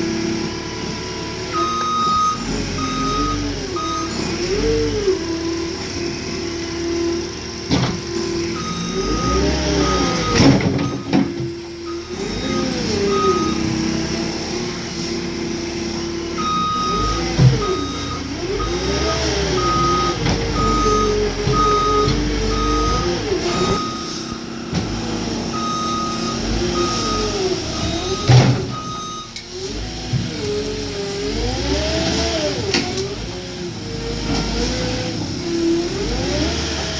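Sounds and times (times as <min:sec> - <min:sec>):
diesel engine under load: 0:00.0 - 0:36.9
backup alarm beeping: 0:08.6 - 0:11.2, 0:11.9 - 0:14.0, 0:16.4 - 0:29.4.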